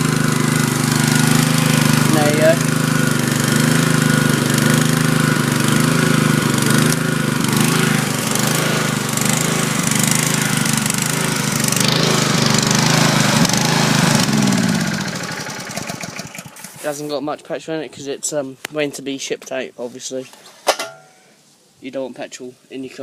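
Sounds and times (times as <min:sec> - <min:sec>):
generator engine running: 0:00.0 - 0:17.0.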